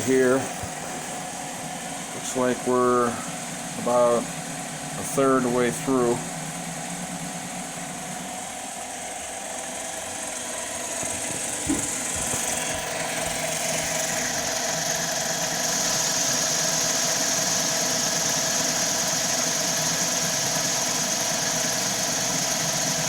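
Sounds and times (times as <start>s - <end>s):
tool cutting metal hiss: 0.0s - 1.3s
lathe machine hum: 0.0s - 23.0s
brief knock: 11.3s - 12.5s.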